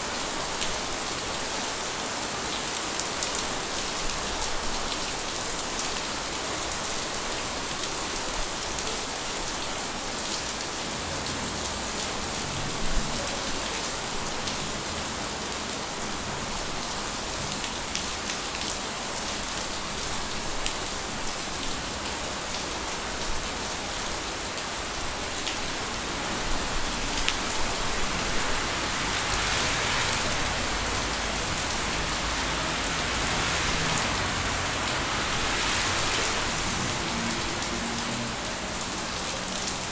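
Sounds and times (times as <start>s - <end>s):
rain falling: 0.0s - 39.9s
raindrops ticking on hard surfaces: 0.1s - 39.9s.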